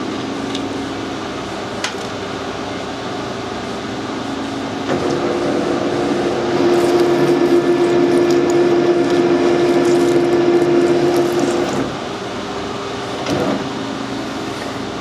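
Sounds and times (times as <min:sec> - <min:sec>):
pitched drive drone: 0:04.8 - 0:12.1
metal lathe running: 0:04.8 - 0:12.3.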